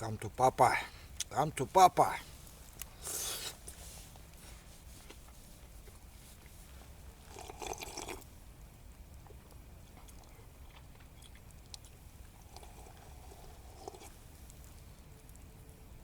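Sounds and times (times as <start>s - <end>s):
person chewing food: 7.3s - 8.3s, 9.2s - 14.2s.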